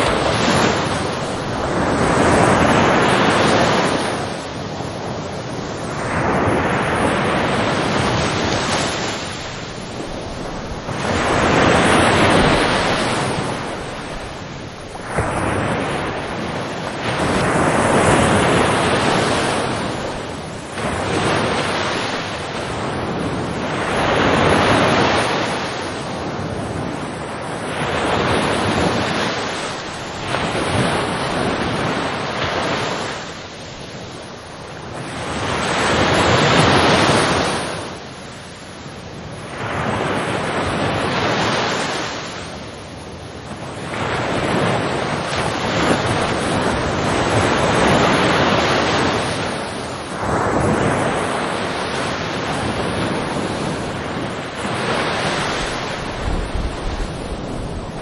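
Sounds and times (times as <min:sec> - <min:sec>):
ocean waves breaking on shore: 0:00.0 - 0:58.0.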